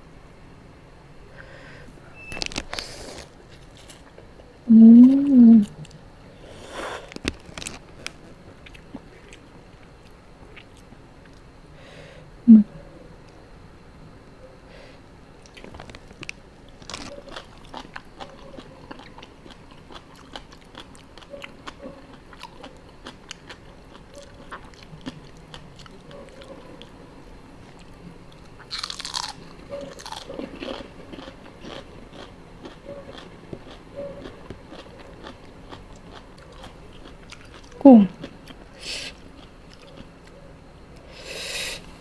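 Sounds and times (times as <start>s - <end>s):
wet chewing and crunching: 7.0s - 11.5s, 15.4s - 27.0s, 27.6s - 41.0s.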